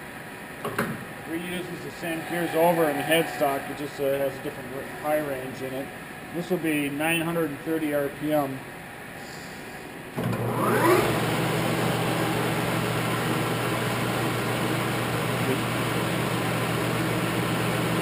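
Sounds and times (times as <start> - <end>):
lathe spinning up and humming: 10.2 - 18.0.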